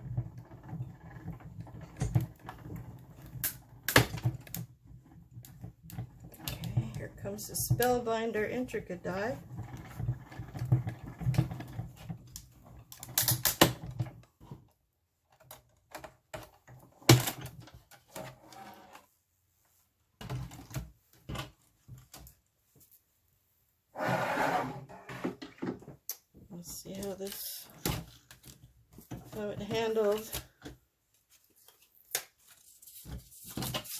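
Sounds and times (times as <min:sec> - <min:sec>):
hand-cranked machine rumbling and clicking: 0:00.0 - 0:08.6, 0:09.2 - 0:14.2.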